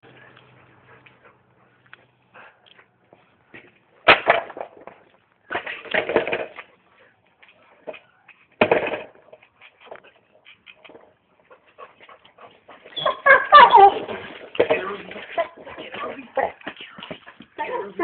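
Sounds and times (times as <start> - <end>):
skateboard slapping on hard ground: 4.1 - 6.6.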